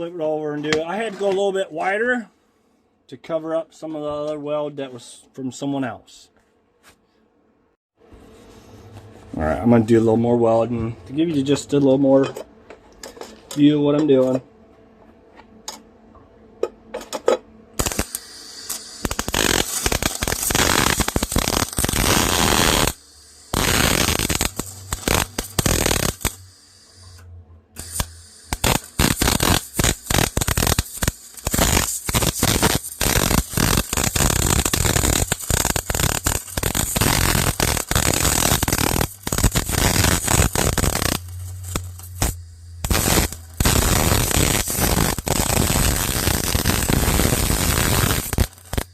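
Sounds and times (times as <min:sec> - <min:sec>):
arc welding sizzle: 0:17.8 - 0:27.2, 0:27.8 - 0:48.9.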